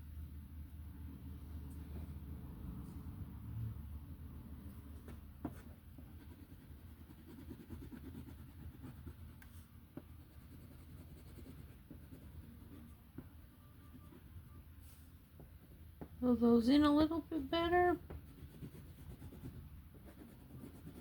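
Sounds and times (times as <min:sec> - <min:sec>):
pencil scratching on paper: 0:05.0 - 0:13.0, 0:18.2 - 0:21.0.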